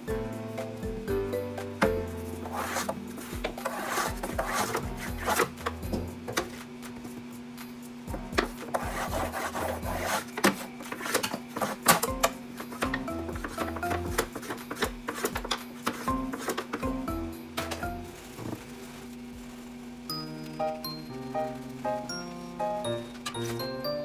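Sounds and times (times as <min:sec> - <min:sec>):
background music: 0:00.0 - 0:06.7, 0:07.3 - 0:18.4, 0:20.1 - 0:24.0
scrubbing a plastic pan: 0:02.2 - 0:07.2, 0:08.4 - 0:12.0, 0:12.6 - 0:16.8
knocks and clicks: 0:08.1 - 0:18.1.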